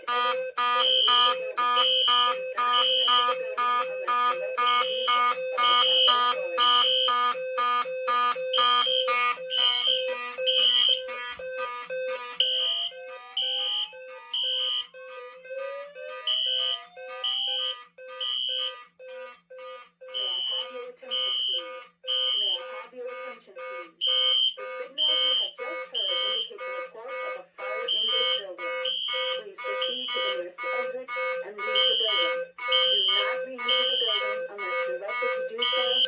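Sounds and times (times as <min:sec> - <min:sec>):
fire alarm horn pulsing: 0:00.0 - 0:36.0
high beeps: 0:00.0 - 0:36.0
slow whoop siren: 0:08.1 - 0:21.9.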